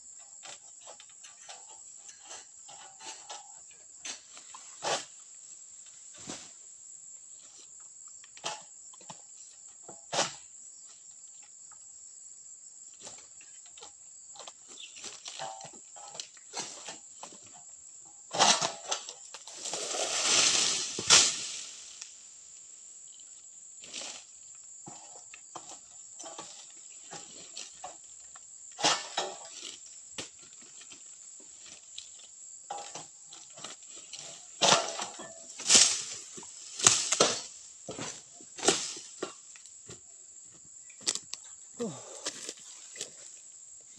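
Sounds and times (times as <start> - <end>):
knocks and rustles from pruning: 13.0 - 17.6, 18.3 - 22.1, 23.8 - 28.1, 28.7 - 40.0, 41.0 - 43.4.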